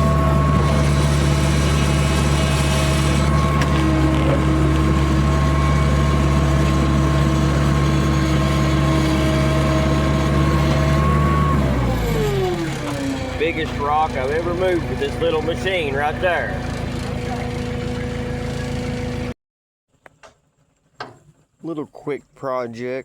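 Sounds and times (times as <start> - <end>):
steady whine: 0.0 - 12.0
skid steer engine drone: 0.0 - 19.4.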